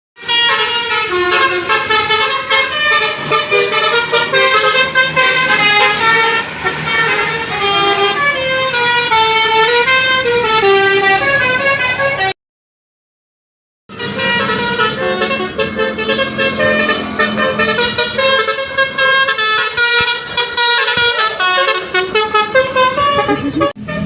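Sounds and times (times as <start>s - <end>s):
bus air horn playing melody: 0.2s - 12.4s, 13.9s - 24.0s.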